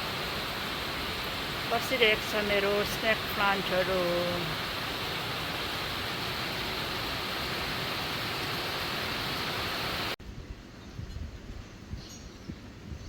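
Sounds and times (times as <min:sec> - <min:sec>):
heavy rain falling: 0:00.0 - 0:10.2.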